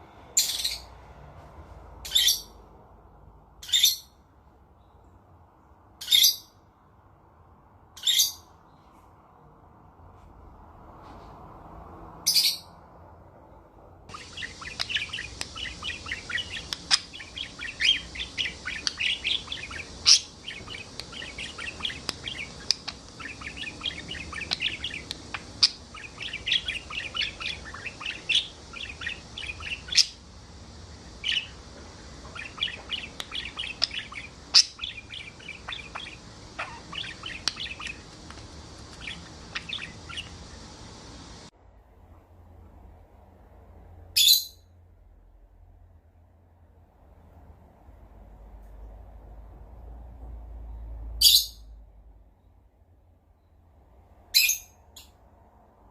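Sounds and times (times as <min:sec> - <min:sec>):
parrot chirping and chattering: 0:00.3 - 0:01.0, 0:02.0 - 0:02.6, 0:03.6 - 0:04.2, 0:06.0 - 0:06.5, 0:08.0 - 0:08.5, 0:12.2 - 0:12.8, 0:14.1 - 0:41.4, 0:44.2 - 0:44.6, 0:51.1 - 0:51.6, 0:54.3 - 0:55.1.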